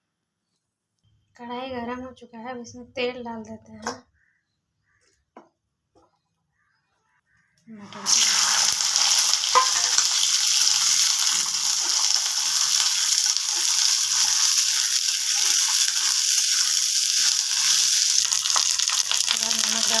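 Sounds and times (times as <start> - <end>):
peas frying in hot oil: 7.9 - 20.0.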